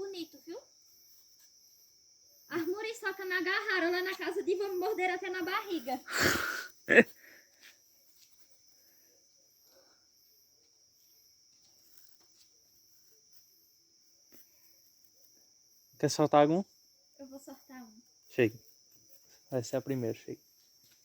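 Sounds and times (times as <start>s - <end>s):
crickets trilling: 0.0s - 21.0s.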